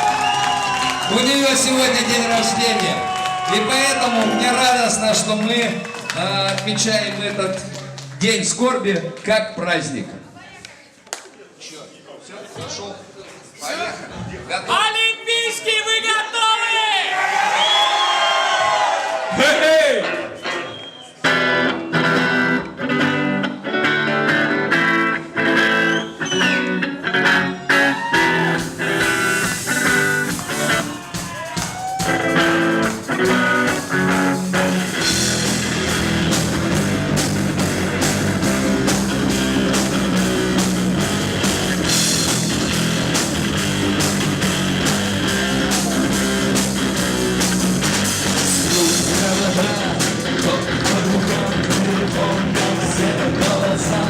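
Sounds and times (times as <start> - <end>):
bass guitar: 0.0 - 9.1, 21.2 - 54.0
guitar melody: 20.0 - 31.3, 32.1 - 54.0
drums and cymbals: 28.0 - 54.0.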